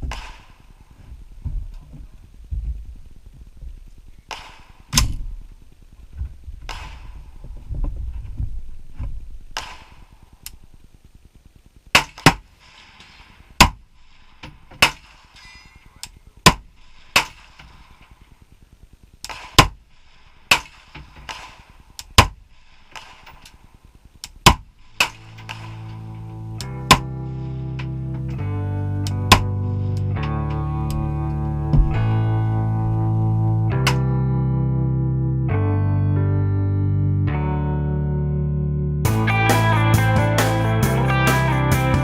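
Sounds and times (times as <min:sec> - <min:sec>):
gunshots: 0:00.0 - 0:00.9, 0:04.3 - 0:05.5, 0:06.6 - 0:07.4, 0:09.5 - 0:10.4, 0:11.9 - 0:18.4, 0:19.2 - 0:27.6, 0:29.2 - 0:29.6
music: 0:25.2 - 0:42.0.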